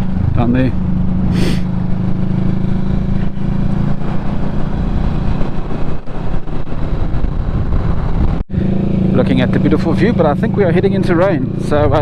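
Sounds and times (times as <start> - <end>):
wind rushing over microphone: 0.0 - 9.8
motorcycle engine running: 0.0 - 12.0.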